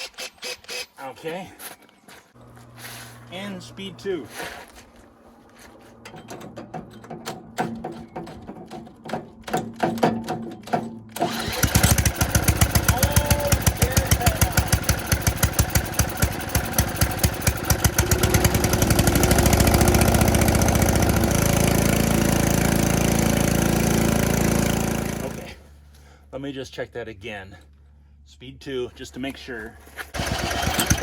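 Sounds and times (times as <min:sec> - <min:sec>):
cordless drill turning engine: 0:00.0 - 0:01.0, 0:11.2 - 0:25.6, 0:30.0 - 0:31.0
engine running: 0:11.1 - 0:25.8, 0:30.2 - 0:31.0.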